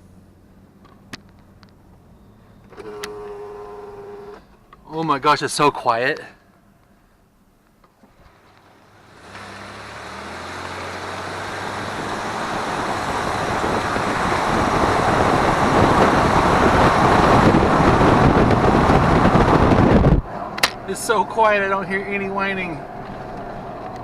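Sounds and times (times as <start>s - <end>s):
car engine accelerating: 8.2s - 24.0s.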